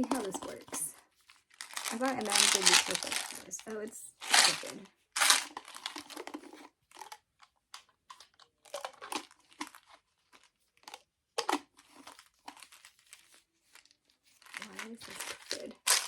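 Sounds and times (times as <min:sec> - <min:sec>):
packaging crackles: 0:00.0 - 0:07.2, 0:08.1 - 0:16.0
packaging crinkling and rustling: 0:00.0 - 0:16.0.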